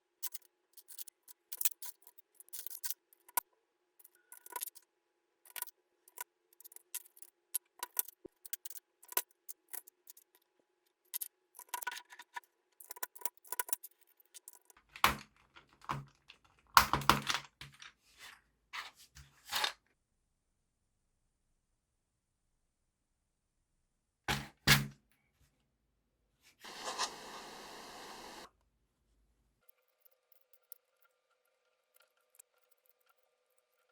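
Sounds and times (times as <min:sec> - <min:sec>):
small plastic clicks: 0:05.5 - 0:10.4.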